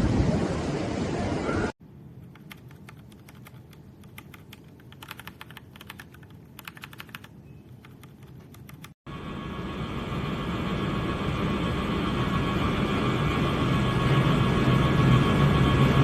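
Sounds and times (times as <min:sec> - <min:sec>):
mechanical keyboard typing: 0:02.2 - 0:09.0.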